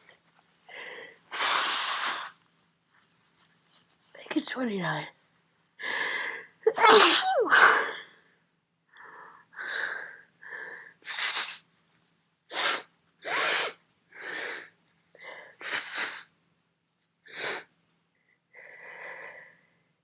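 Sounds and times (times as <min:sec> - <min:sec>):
person sneezing: 0:06.7 - 0:07.8.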